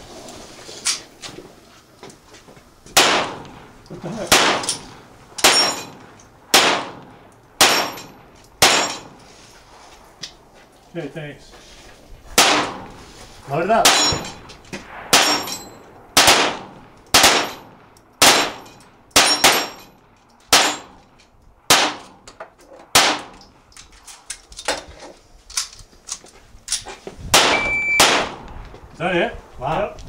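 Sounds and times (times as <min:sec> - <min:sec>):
gunshots: 0:03.0 - 0:03.6, 0:04.2 - 0:09.2, 0:12.4 - 0:13.0, 0:13.8 - 0:18.6, 0:19.2 - 0:19.8, 0:20.5 - 0:21.0, 0:21.7 - 0:22.1, 0:22.9 - 0:23.4, 0:27.3 - 0:28.4
steel target ringing: 0:04.6 - 0:06.0, 0:13.8 - 0:14.4, 0:15.1 - 0:15.9, 0:27.4 - 0:28.2.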